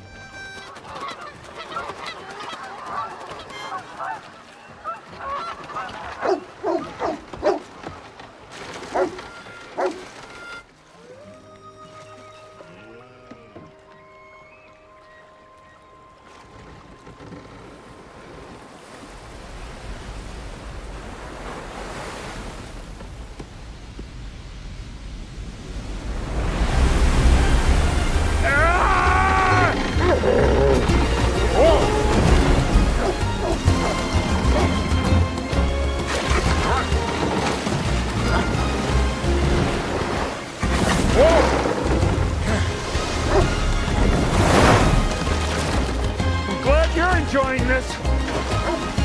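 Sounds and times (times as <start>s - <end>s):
river rapids rushing: 26.3s - 49.0s.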